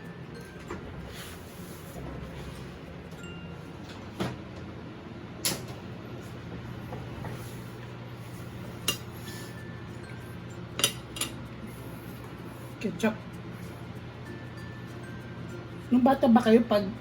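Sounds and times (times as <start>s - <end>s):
steady low hum: 0.0s - 17.0s
tableware clinking: 8.8s - 11.5s.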